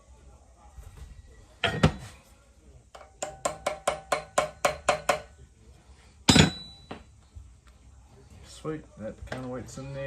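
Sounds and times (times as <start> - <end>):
sharp ringing metal taps: 3.0 - 5.4, 6.3 - 7.1.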